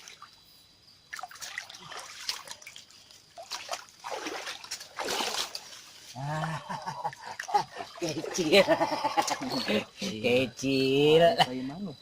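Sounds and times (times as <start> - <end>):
river water splashing and trickling: 0.0 - 11.2
loud water splashes: 3.4 - 5.7.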